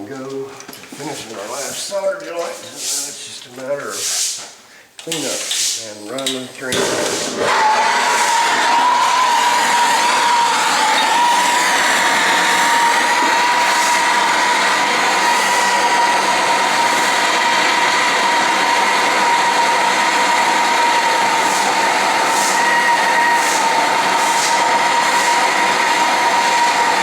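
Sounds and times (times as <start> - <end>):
soldering torch hissing: 8.1 - 27.0.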